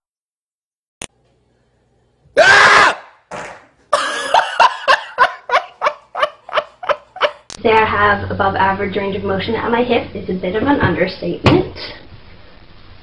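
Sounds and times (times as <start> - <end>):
person crying out loudly: 2.4 - 3.2.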